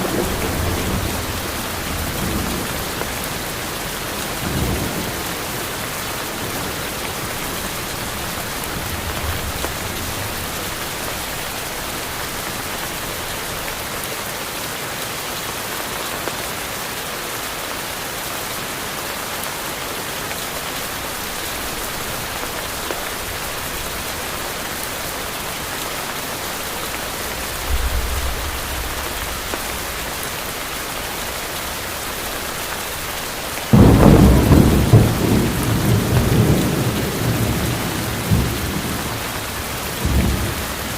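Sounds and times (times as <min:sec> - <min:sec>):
heavy rain: 0:00.0 - 0:40.9
loud thunderclap: 0:33.7 - 0:39.2, 0:40.0 - 0:40.9.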